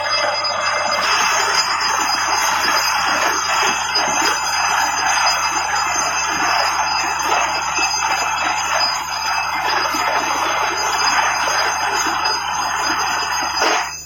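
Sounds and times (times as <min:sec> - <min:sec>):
drilling rig running: 0:00.0 - 0:14.0
low hum: 0:00.0 - 0:14.0.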